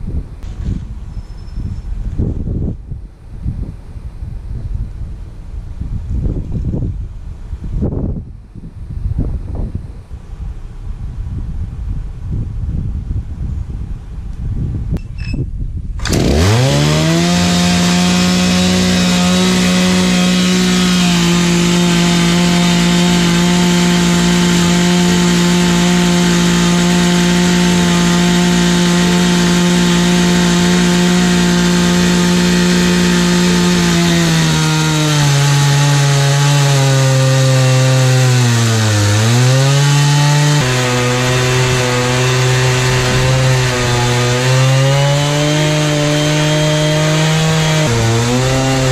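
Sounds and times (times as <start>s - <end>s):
chainsaw cutting log: 16.0s - 48.9s.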